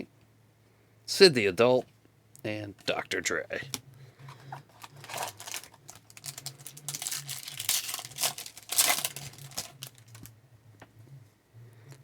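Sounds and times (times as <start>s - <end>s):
wrapper crinkling and tearing: 4.3s - 10.3s.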